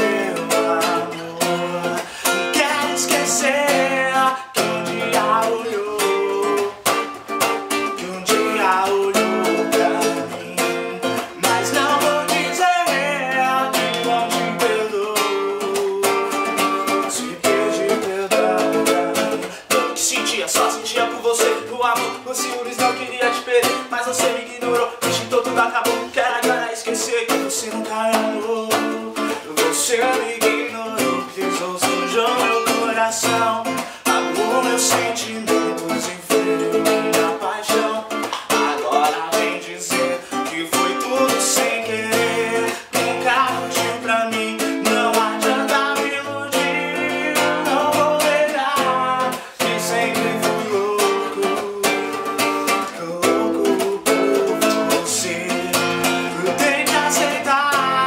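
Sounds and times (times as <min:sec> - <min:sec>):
acoustic string instrumental music: 0:00.0 - 0:58.0.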